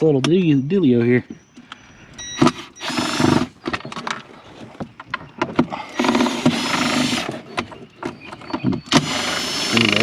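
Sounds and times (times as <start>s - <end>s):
cordless drill running: 2.4s - 3.6s, 5.9s - 7.4s, 8.9s - 10.0s
handling clicks and knocks: 3.5s - 6.6s, 7.2s - 9.1s.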